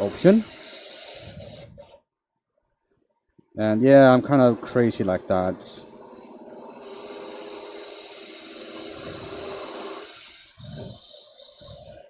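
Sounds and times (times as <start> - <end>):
wood lathe cutting tool hiss: 0.0 - 2.0, 4.1 - 12.0
faint motor hum: 3.6 - 12.0.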